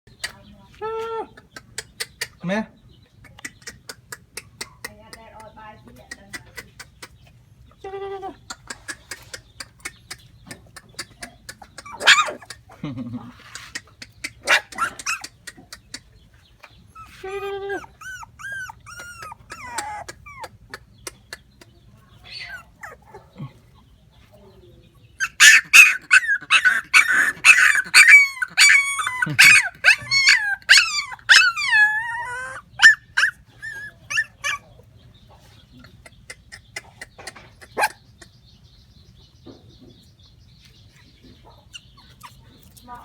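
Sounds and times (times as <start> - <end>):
puppies whining and yelping: 10.0 - 23.8, 25.1 - 38.3, 41.2 - 42.8.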